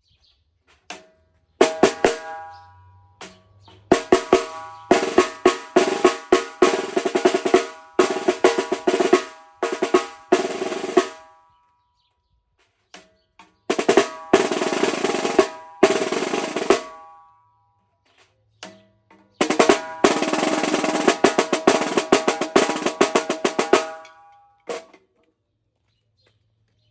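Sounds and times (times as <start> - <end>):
snare drum rolls and strokes: 1.6 - 2.5, 3.9 - 11.3, 13.7 - 17.1, 19.4 - 24.9.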